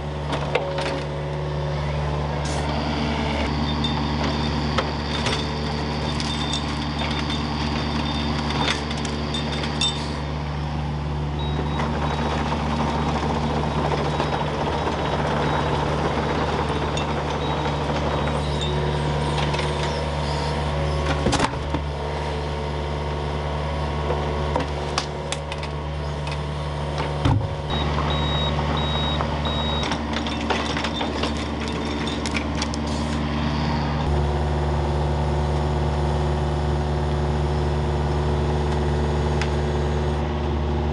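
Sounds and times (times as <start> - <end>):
machine engine running: 0.0 - 40.9
beeps: 27.7 - 29.9.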